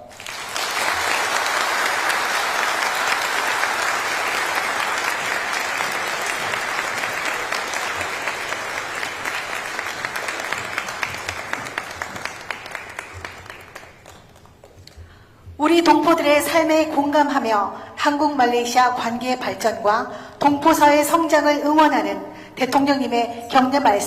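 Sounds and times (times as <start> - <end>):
audience applauding: 0.0 - 15.2.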